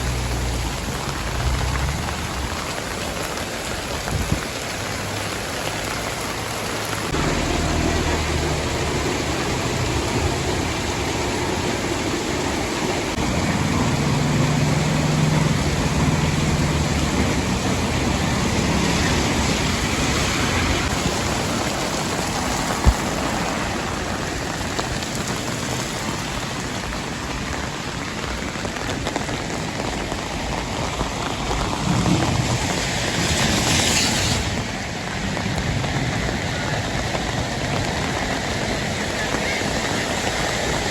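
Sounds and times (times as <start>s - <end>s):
heavy rain falling: 0.0s - 40.9s
vehicle engine running: 6.8s - 19.5s.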